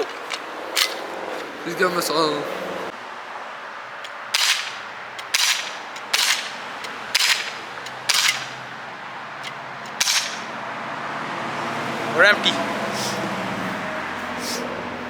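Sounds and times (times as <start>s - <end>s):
bb gun shots popping: 4.3s - 8.6s, 10.0s - 10.5s.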